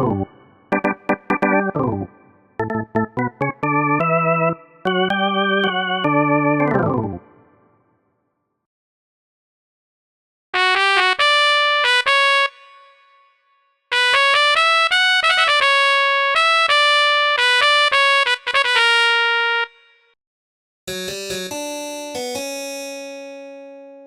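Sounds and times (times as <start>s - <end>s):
synthesizer keyboard runs: 0.0s - 7.4s, 20.9s - 24.0s.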